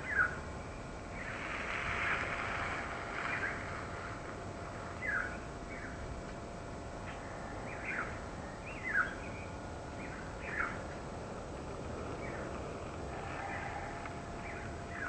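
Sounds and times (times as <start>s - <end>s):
bird chirping: 0.0s - 0.4s, 5.0s - 6.0s, 7.6s - 11.0s, 12.1s - 12.5s, 14.4s - 15.0s
breeze: 0.0s - 15.0s.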